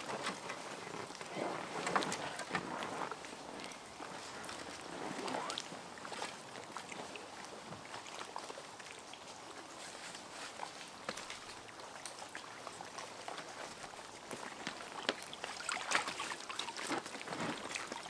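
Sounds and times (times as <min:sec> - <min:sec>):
paddle swish in water: 0:00.0 - 0:11.6, 0:12.3 - 0:18.0
paddle splashes and drips: 0:00.2 - 0:18.0.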